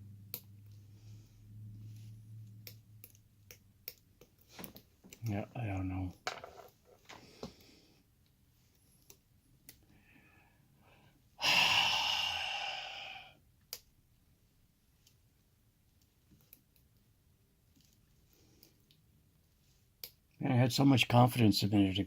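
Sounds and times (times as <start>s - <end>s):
person sighing: 11.4s - 13.4s.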